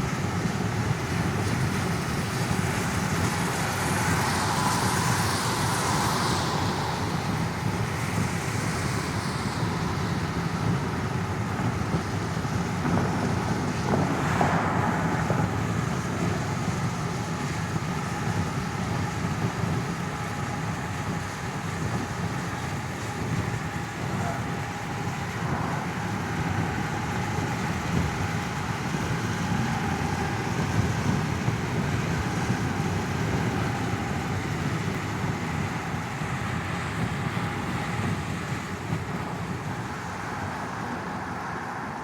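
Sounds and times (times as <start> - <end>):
engine and road rumble in car: 0.0 - 42.0
brief whoosh: 1.4 - 18.5
high hiss: 1.6 - 17.7.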